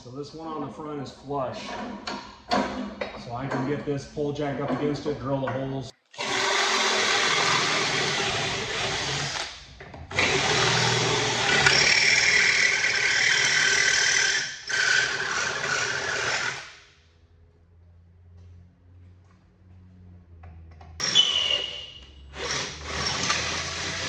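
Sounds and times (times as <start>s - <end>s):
power drill boring through metal: 6.1s - 9.5s, 10.1s - 16.7s, 21.0s - 24.0s
high squeal: 21.0s - 22.4s.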